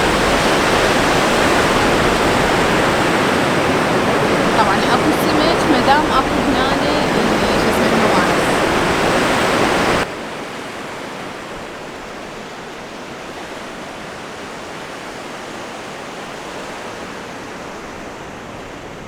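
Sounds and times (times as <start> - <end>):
loud rush of noise: 0.0 - 10.0
sea waves washing on shore: 0.0 - 19.0.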